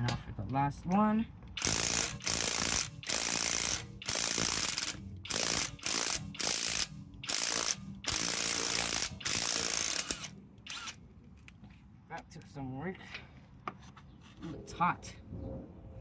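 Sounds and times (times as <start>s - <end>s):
impact wrench hammering: 1.6s - 11.0s.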